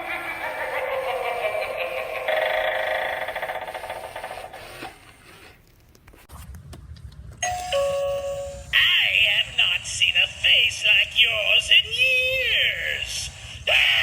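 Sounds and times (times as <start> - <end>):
electronic doorbell tone: 7.4 - 8.8.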